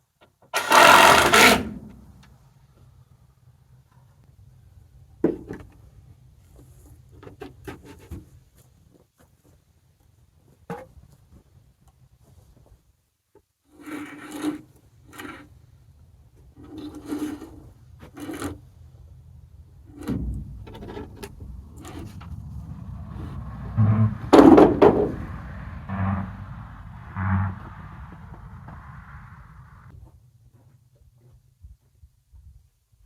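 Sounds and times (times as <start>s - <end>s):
wood scraping and rubbing: 0.6s - 1.8s, 19.9s - 29.2s
low steady rumble: 18.9s - 29.9s.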